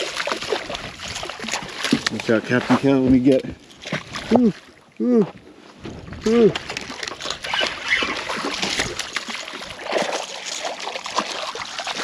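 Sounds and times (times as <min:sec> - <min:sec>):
fish thrashing splashing water: 0:00.0 - 0:02.8, 0:03.6 - 0:04.8, 0:06.5 - 0:12.0.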